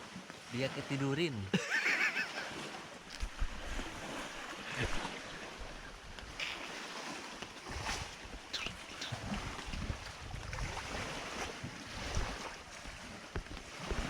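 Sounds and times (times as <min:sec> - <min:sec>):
wind gusting across microphone: 0:03.1 - 0:14.0.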